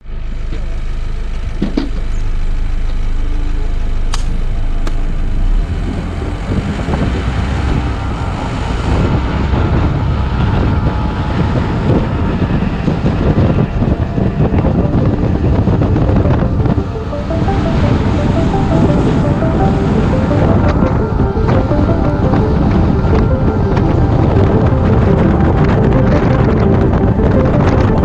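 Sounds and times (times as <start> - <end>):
wind buffeting microphone: 5.7 - 28.0.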